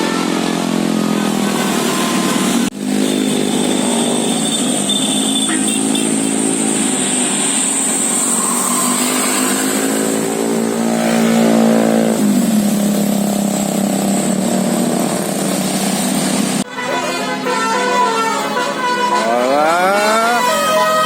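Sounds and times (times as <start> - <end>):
vehicle engine accelerating: 0.0 - 16.7.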